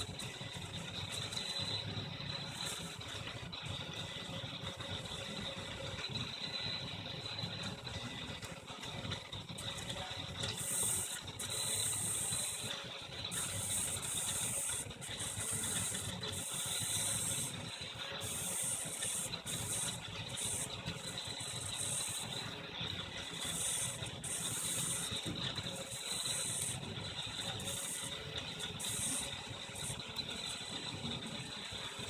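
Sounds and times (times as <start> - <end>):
printer mechanical hum: 0.0 - 32.0.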